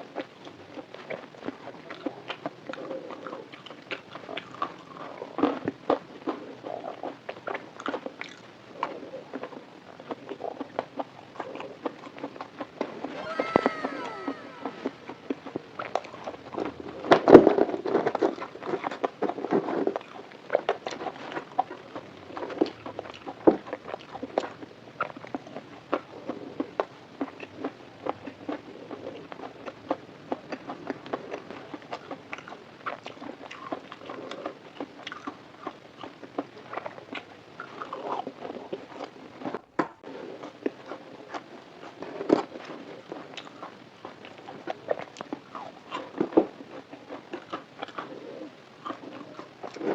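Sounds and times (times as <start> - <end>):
chewing fried food: 0.0 - 49.9.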